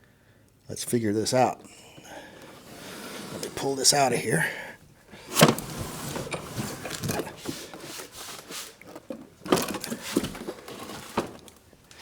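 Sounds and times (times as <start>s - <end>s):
cardboard scraping and rubbing: 2.3s - 4.1s, 5.2s - 11.6s.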